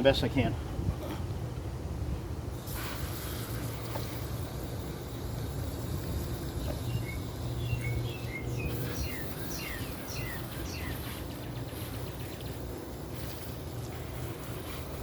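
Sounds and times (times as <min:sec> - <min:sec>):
bird chirping: 0:06.4 - 0:12.7.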